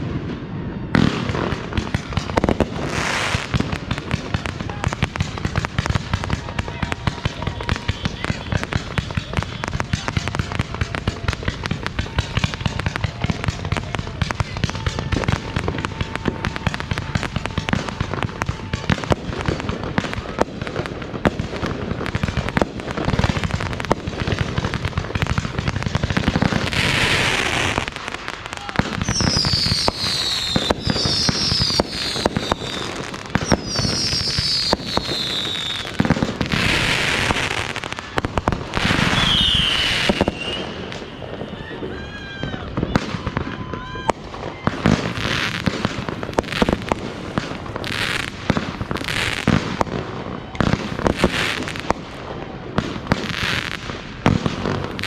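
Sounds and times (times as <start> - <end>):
fireworks crackling and popping: 0.0 - 55.0
high falling whistles: 39.0 - 41.4.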